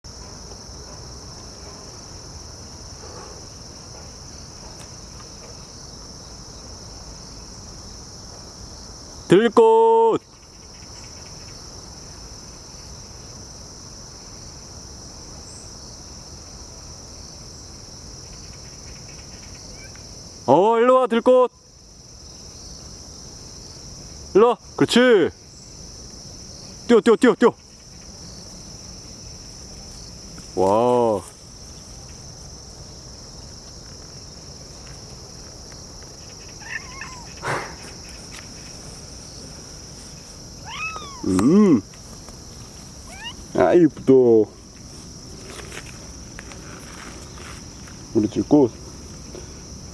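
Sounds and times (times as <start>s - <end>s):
crickets and insects chirping: 0.0s - 49.9s
rising-and-falling call: 36.4s - 37.9s, 40.6s - 41.8s.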